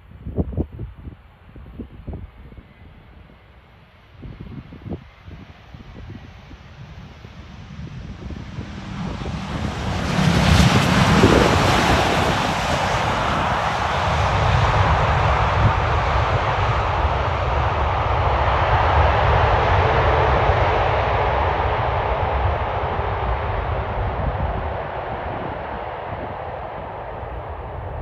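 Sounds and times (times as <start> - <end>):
jet airliner engine roar: 0.2 - 28.0
high engine whine: 7.6 - 28.0.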